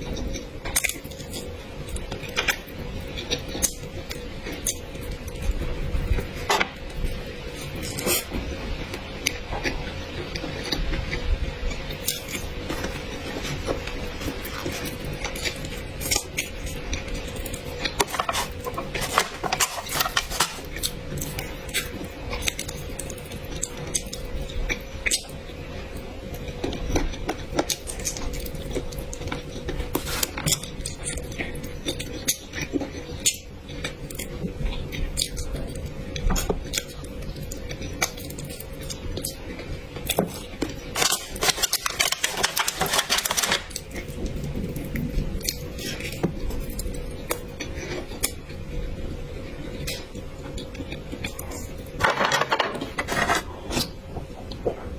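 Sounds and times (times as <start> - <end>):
faint steady hum: 0.0 - 54.9.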